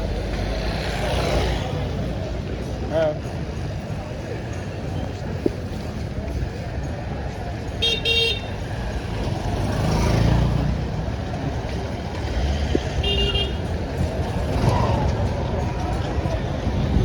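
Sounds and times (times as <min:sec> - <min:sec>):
street traffic: 0:00.0 - 0:17.0
vehicle horn beeps: 0:07.8 - 0:08.5, 0:13.0 - 0:13.6.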